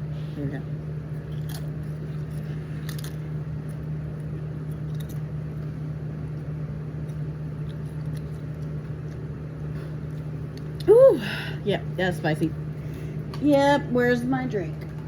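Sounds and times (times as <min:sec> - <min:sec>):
steady low hum: 0:00.0 - 0:15.0
crisps being chewed: 0:01.2 - 0:09.4.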